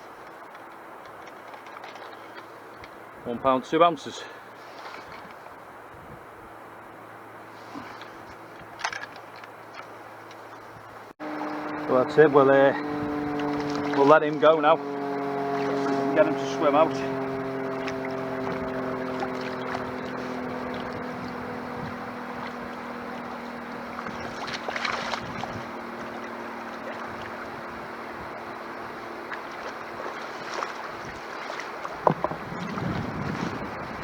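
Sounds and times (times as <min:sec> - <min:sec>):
seawater washing at shoreline: 0:00.0 - 0:34.0
light splashes and knocks: 0:00.2 - 0:03.0, 0:07.5 - 0:11.7, 0:12.9 - 0:33.6
wind on microphone: 0:05.0 - 0:06.6, 0:10.7 - 0:34.0.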